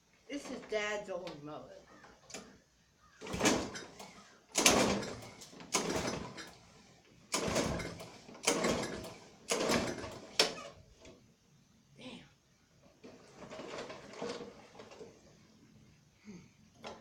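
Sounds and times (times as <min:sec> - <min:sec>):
engine turning over: 0:03.2 - 0:10.6
recoil starter cord pulls: 0:03.2 - 0:11.2, 0:13.0 - 0:15.4.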